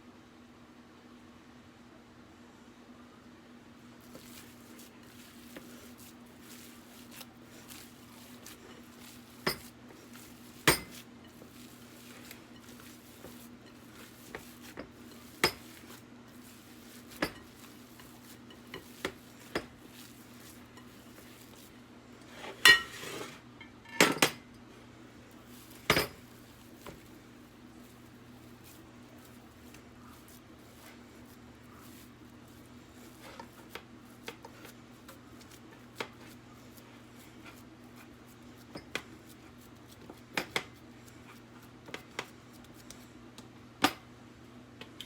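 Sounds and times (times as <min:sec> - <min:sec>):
cutlery and dishes clinking: 0:08.4 - 0:19.7, 0:22.5 - 0:24.5.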